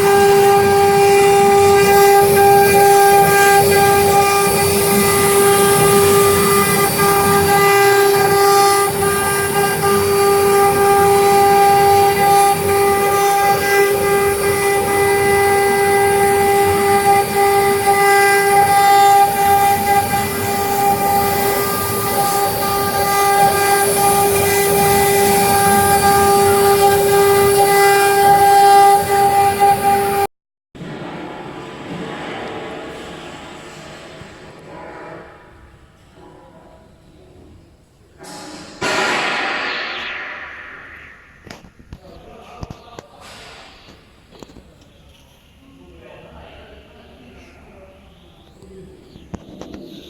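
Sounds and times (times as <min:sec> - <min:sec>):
wood router high whine: 0:00.0 - 0:30.2.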